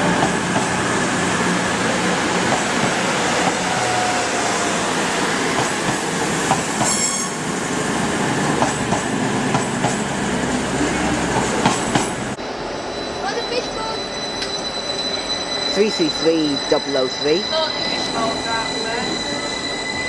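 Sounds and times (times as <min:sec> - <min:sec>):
train wheels rumbling on rails: 0:00.0 - 0:20.0
high-pitched wheel squeal: 0:06.8 - 0:07.4, 0:12.8 - 0:20.0.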